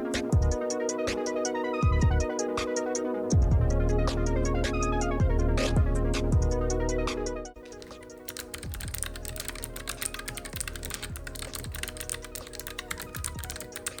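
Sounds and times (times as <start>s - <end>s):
electronic music: 0.0s - 14.0s
mechanical keyboard typing: 7.6s - 14.0s.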